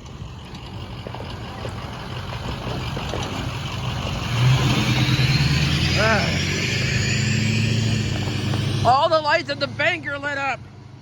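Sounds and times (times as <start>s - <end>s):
truck engine approaching: 0.0s - 11.0s.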